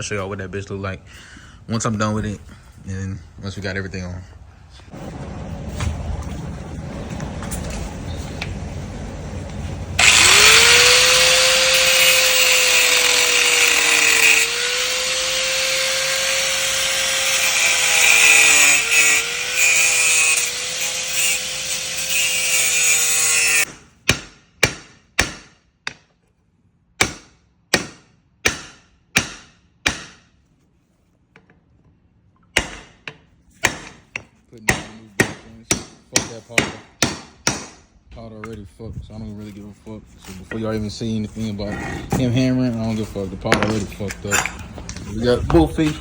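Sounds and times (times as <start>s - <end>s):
high-speed power tool running: 10.0s - 23.7s
hammer strikes: 23.6s - 26.1s, 27.0s - 30.3s, 32.6s - 37.8s.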